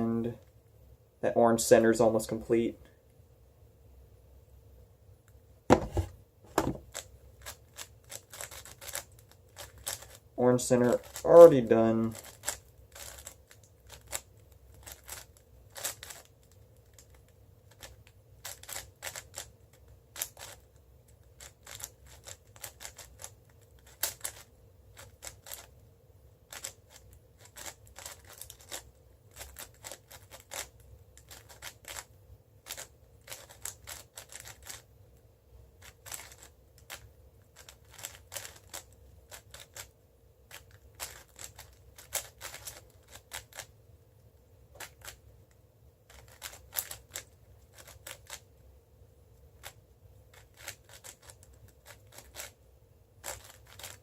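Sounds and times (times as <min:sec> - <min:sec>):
speed cube clicking: 0:06.9 - 0:10.2, 0:10.9 - 0:11.3, 0:12.1 - 0:19.5, 0:20.1 - 0:25.7, 0:26.5 - 0:34.8, 0:35.8 - 0:39.9, 0:40.5 - 0:43.7, 0:44.8 - 0:45.2, 0:46.1 - 0:48.4, 0:49.6 - 0:52.6, 0:53.2 - 0:54.0.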